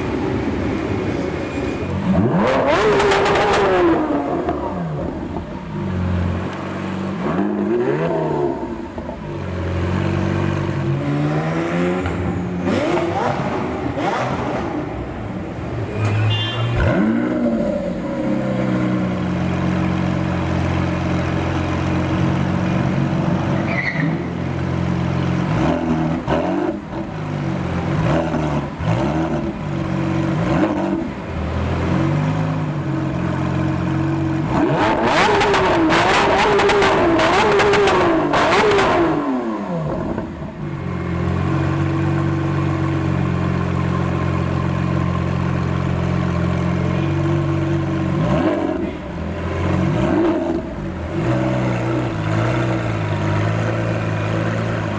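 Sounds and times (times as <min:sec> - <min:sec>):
car engine idling and revving: 0:00.0 - 0:54.9.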